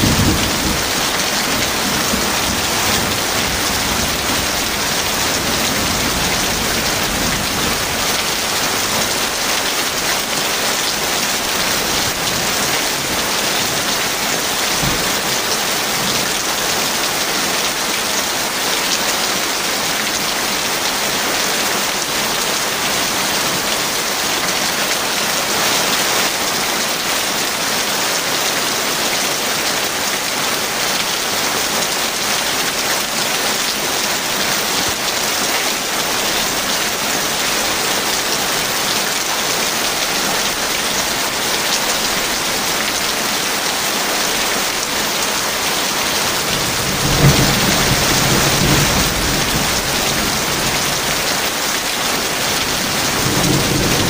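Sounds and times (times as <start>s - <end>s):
thunder rumbling: 0.0s - 9.4s, 46.4s - 51.1s, 52.8s - 54.0s
heavy rain falling: 0.0s - 54.0s.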